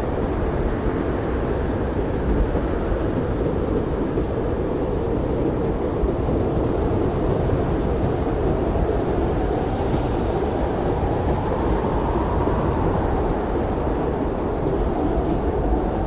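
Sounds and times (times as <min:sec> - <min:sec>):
blizzard wind blowing: 0:00.0 - 0:16.0.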